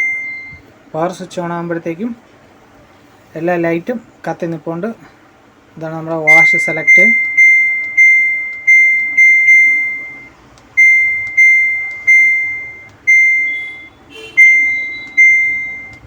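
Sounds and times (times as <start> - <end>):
washing machine buzzer beeping: 0.0 - 0.7, 6.3 - 16.0.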